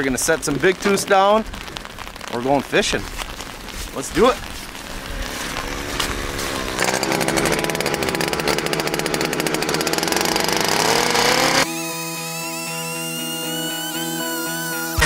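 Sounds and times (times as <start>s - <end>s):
ice auger engine revving: 5.5s - 11.7s.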